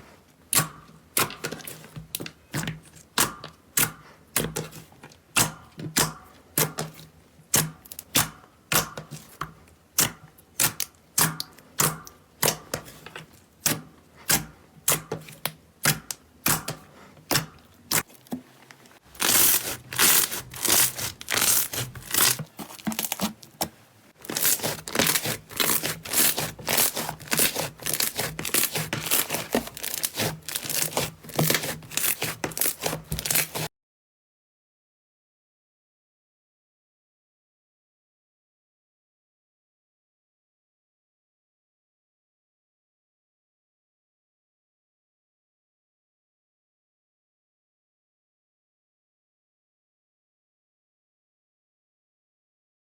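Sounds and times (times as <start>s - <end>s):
slime crackling when squeezed: 19.1s - 23.4s, 24.2s - 33.6s.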